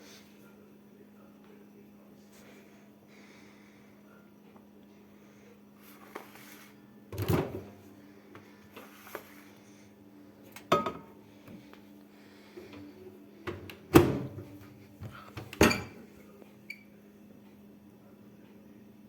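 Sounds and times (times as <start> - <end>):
steady low hum: 0.0 - 19.0
knocks of kitchen items handled: 10.7 - 11.1.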